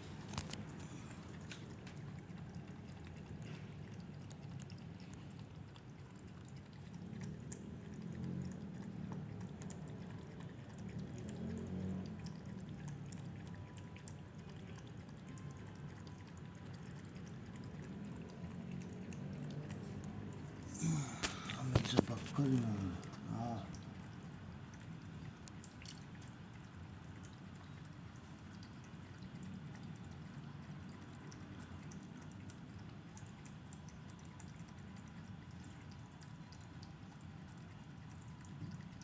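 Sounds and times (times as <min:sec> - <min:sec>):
cat lapping water: 0:00.0 - 0:39.0
low background hum: 0:11.9 - 0:39.0.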